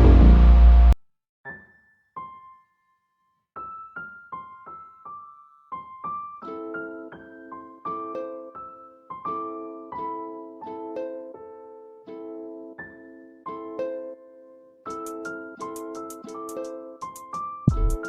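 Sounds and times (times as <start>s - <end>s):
soft piano melody: 1.5s - 18.0s.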